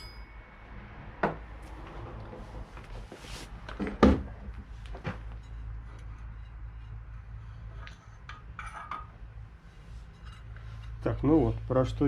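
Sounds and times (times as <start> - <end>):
metal tools knocking and clanking: 8.2 - 9.2.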